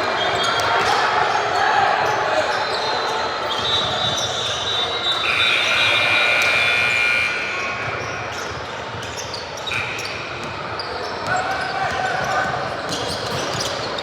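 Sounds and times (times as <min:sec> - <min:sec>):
basketball bouncing on court: 0:07.9 - 0:14.0.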